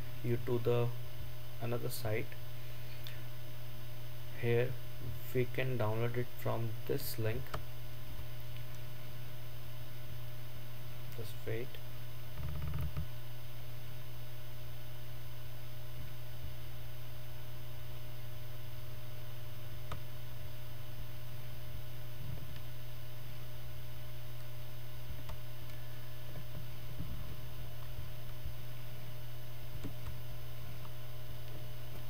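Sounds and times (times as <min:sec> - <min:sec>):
electrical mains hum: 0:00.0 - 0:32.0.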